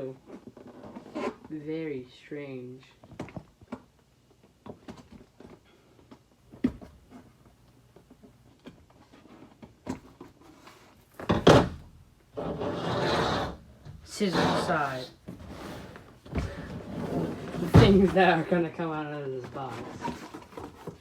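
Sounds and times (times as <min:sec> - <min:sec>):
cardboard box being handled: 0:16.4 - 0:18.7, 0:19.4 - 0:21.0
thumps on cardboard box: 0:17.4 - 0:18.4.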